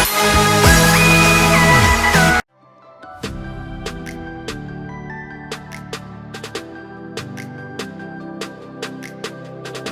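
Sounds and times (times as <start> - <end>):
electronic music with synth: 0.0 - 2.4.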